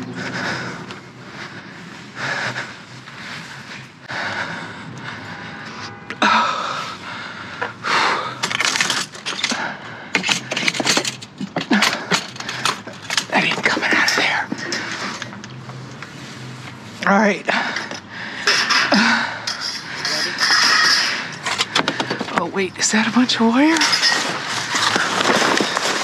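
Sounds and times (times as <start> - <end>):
person breathing hard: 0.0 - 10.8, 11.5 - 16.5, 17.5 - 22.3
junk scraping and rustling: 8.4 - 16.8, 17.8 - 22.5, 23.5 - 26.0.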